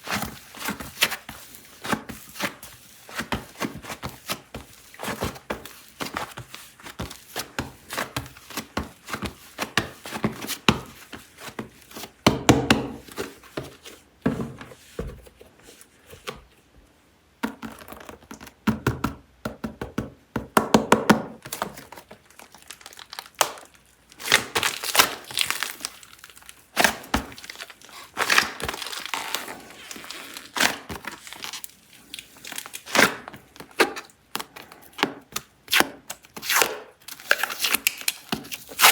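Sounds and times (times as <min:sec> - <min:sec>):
packaging crinkling and tearing: 0:21.5 - 0:38.9.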